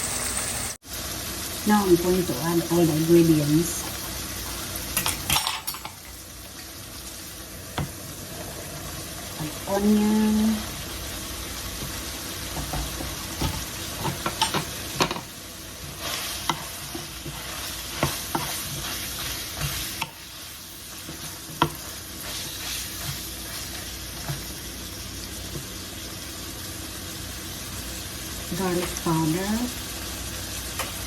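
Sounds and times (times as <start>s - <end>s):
meat and onion sizzling in pan: 0.0s - 31.0s.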